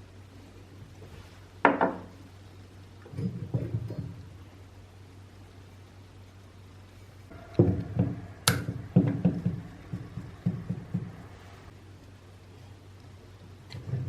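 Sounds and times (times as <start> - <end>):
steady low hum: 0.0 - 14.0
knocks and clunks: 3.1 - 4.2, 7.3 - 11.5.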